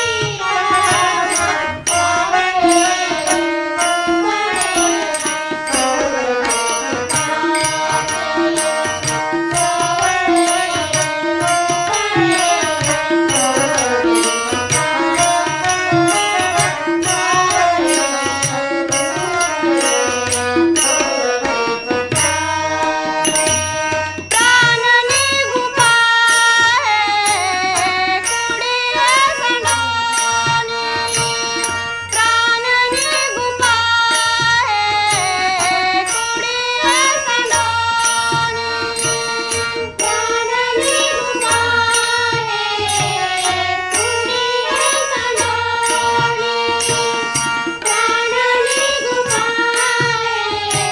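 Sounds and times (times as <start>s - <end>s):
tabla drumming: 0.0s - 50.9s.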